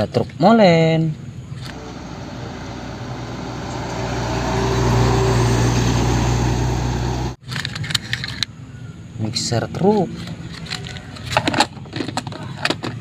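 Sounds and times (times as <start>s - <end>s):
vehicle engine drone: 1.6s - 7.4s.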